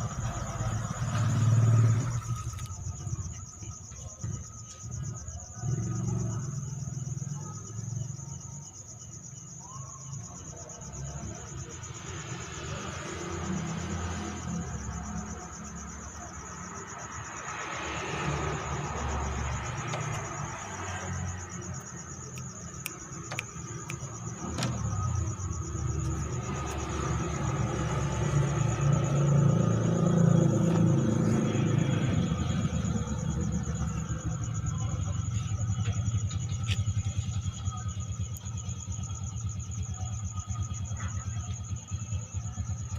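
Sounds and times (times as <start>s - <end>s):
high-pitched insect trill: 0.0s - 42.9s.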